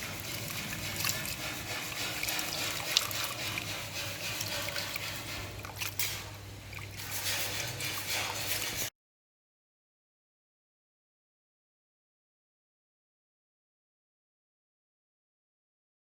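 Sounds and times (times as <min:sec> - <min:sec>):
water trickling and dripping: 0:00.0 - 0:08.9.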